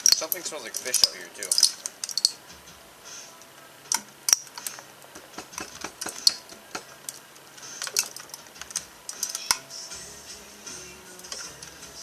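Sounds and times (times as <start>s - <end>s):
battery plates and case knocking: 3.9s - 7.1s.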